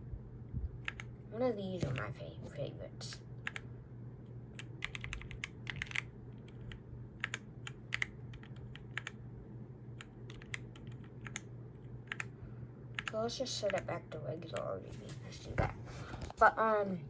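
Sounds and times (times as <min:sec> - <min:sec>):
mechanical keyboard keys clicking: 0:04.6 - 0:09.2, 0:10.0 - 0:12.3.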